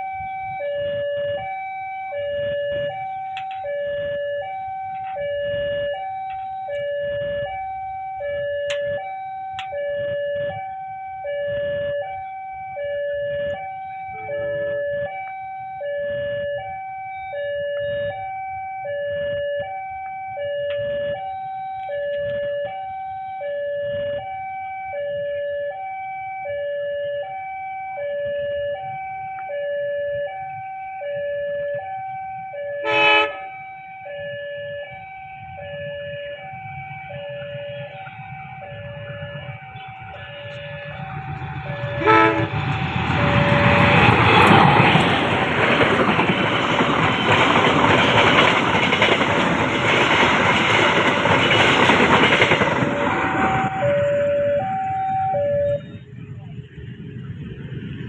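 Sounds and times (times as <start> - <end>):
level crossing two-tone alarm: 0.0 - 56.1
road traffic rumble: 0.0 - 58.0.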